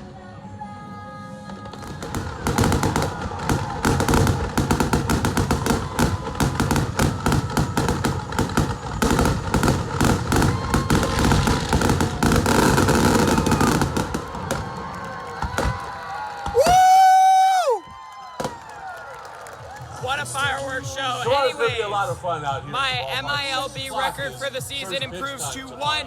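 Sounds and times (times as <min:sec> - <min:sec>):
fireworks bangs: 0:01.4 - 0:20.5.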